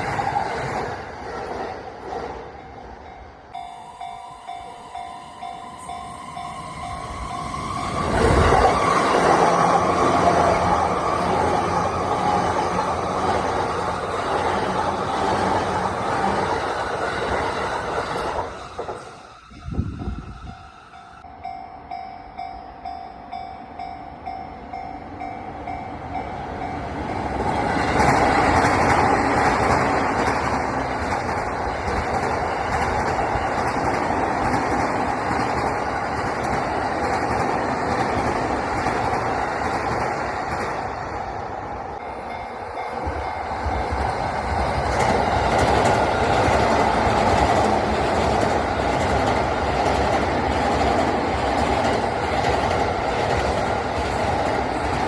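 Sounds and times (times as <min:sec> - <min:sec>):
train passing at speed: 0:00.0 - 0:55.0
level crossing warning bell: 0:02.7 - 0:08.1, 0:19.6 - 0:27.3, 0:41.2 - 0:55.0.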